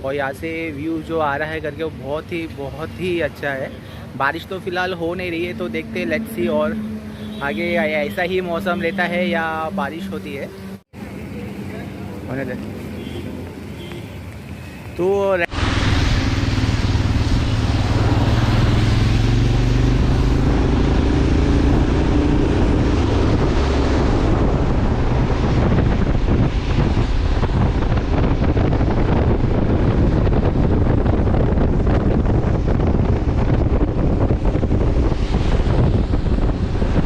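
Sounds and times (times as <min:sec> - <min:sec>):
motorcycle engine: 0:06.4 - 0:08.1, 0:15.5 - 0:37.0
wind rushing over microphone: 0:14.4 - 0:37.0.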